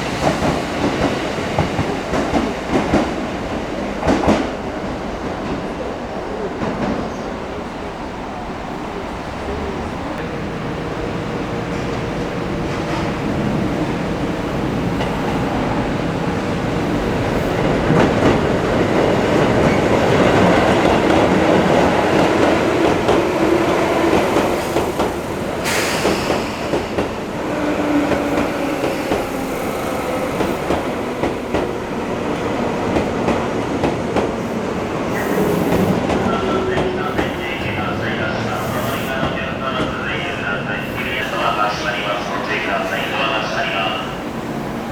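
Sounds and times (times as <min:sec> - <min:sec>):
train wheels clattering over rails: 0:16.3 - 0:37.8.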